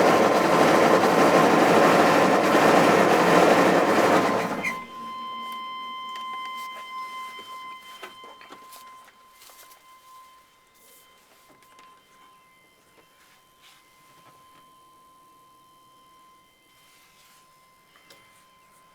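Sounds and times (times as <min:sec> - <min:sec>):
diesel engine knocking and rattling: 0:00.0 - 0:04.9
steady high tone: 0:04.1 - 0:07.5.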